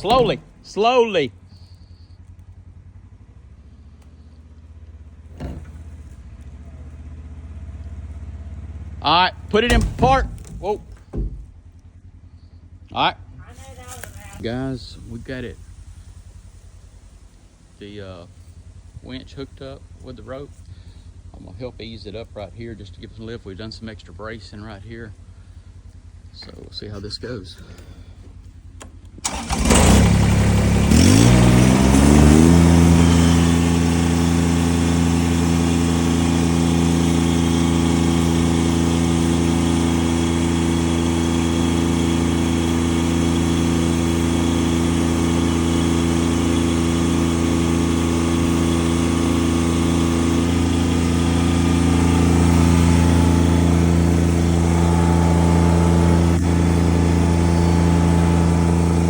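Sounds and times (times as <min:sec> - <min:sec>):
engine starting and running: 0:00.0 - 0:59.0.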